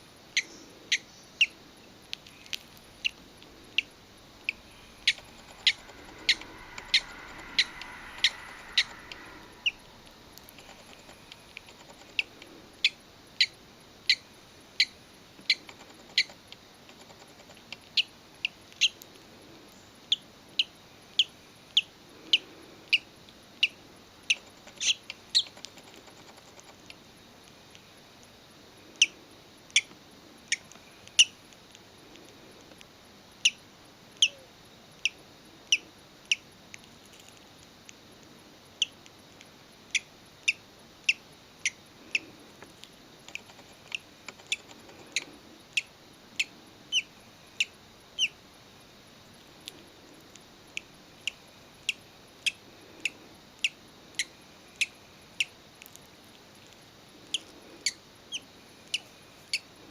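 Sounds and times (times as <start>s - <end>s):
bird chick peeping: 0.3s - 1.6s, 2.2s - 14.2s, 14.8s - 18.1s, 43.2s - 48.4s, 57.2s - 59.6s.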